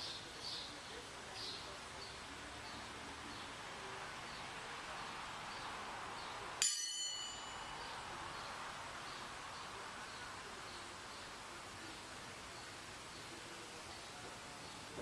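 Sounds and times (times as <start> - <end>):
faint steady hiss: 0.0 - 15.0
sharp metallic clang: 6.6 - 8.0.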